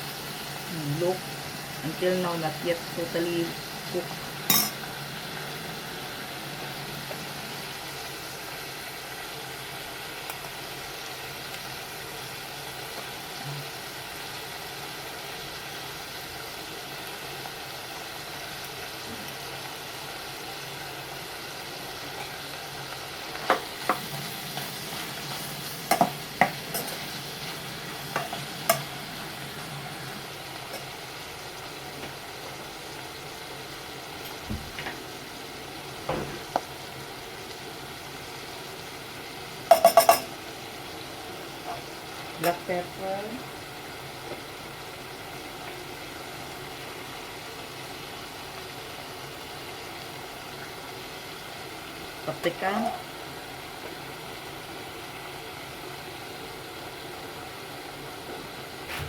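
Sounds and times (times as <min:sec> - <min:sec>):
vegetables sizzling in a pan: 0:00.0 - 0:59.0
utensil clattering on a pan: 0:39.7 - 0:40.3.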